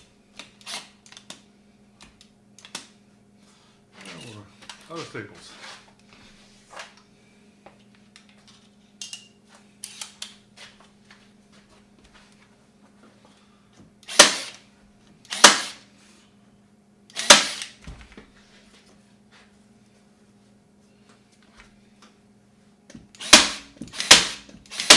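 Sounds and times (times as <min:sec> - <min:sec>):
staple gun firing: 0:14.1 - 0:14.6, 0:15.3 - 0:15.8, 0:17.1 - 0:17.7, 0:23.2 - 0:24.9.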